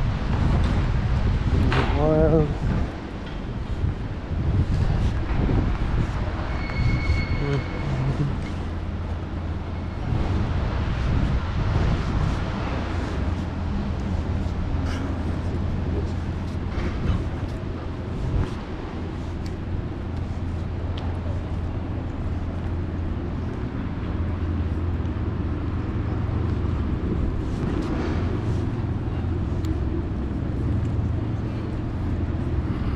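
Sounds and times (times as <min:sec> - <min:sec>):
low rumble of city ambience: 0:00.0 - 0:32.9
street noise: 0:00.0 - 0:32.9.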